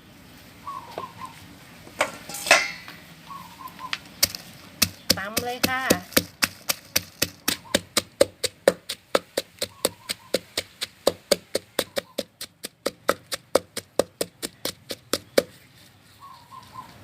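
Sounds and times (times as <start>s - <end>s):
pestle pounding in a mortar: 4.2s - 15.6s.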